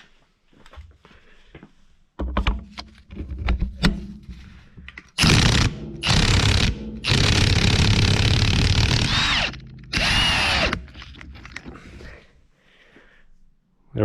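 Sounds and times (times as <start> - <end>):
impact wrench hammering: 5.2 - 11.1.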